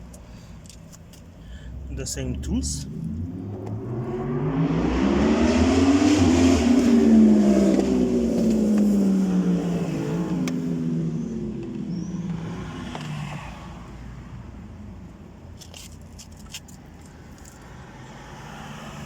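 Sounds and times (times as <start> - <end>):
motor vehicle passing by: 1.8 - 13.9, 17.8 - 19.0.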